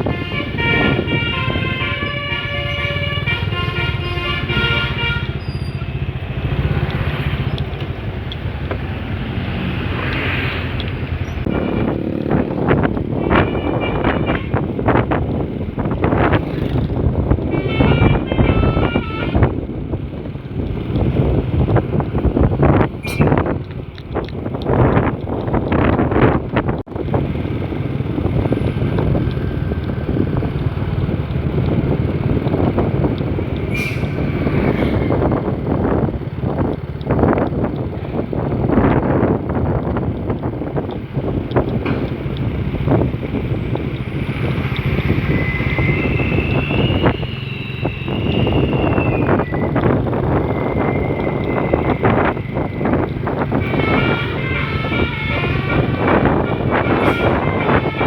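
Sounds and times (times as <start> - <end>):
truck horn playing multi-tone melody: 0.0 - 5.8, 11.5 - 15.1, 17.4 - 19.6, 45.4 - 58.0
road noise: 0.0 - 58.0
truck engine rumble: 0.0 - 58.0
wind buffeting microphone: 0.0 - 58.0.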